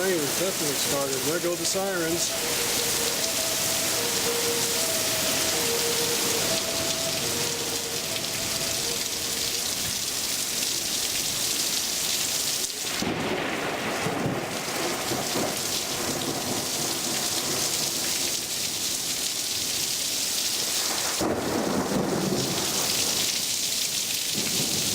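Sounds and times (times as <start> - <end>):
thunder rumbling: 0.0 - 11.0, 12.9 - 18.2, 20.8 - 23.2
two-tone warning siren: 0.0 - 11.3
heavy rain pouring: 0.0 - 24.9.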